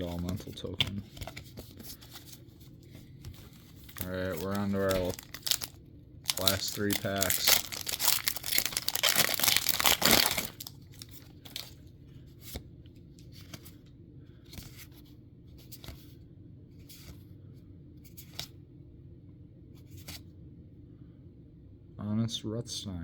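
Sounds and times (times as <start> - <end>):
foil wrapper tearing: 3.9 - 11.7.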